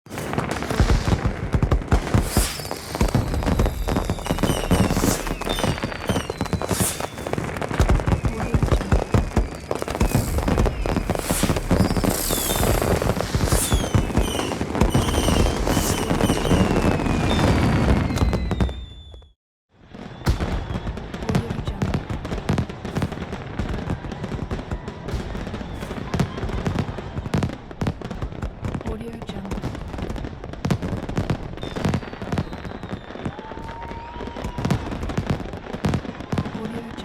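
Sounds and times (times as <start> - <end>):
crackling pops: 0.0 - 18.7
fireworks whistles falling: 0.0 - 21.8, 25.2 - 27.4, 31.5 - 36.5
fireworks bangs: 0.0 - 37.0.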